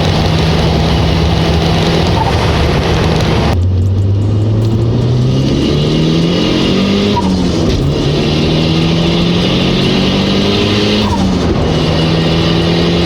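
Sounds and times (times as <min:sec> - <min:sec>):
car engine accelerating: 0:00.0 - 0:13.0.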